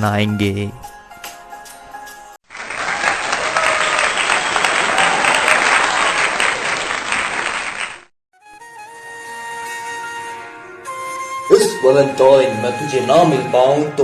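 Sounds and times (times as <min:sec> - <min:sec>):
audience applause: 0:02.5 - 0:08.1.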